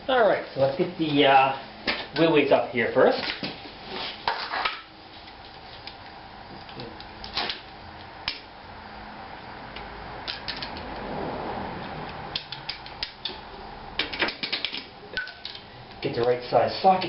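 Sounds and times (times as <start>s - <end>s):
soft scraping rustle: 3.5s - 5.8s.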